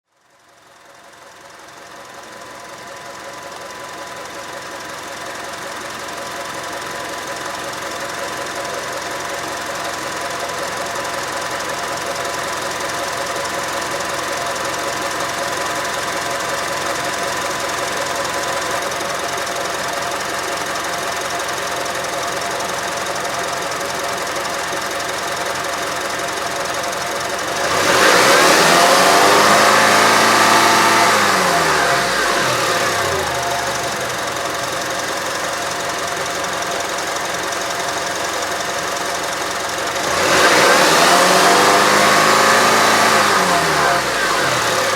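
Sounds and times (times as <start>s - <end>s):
car engine running and revving: 0.4s - 44.9s.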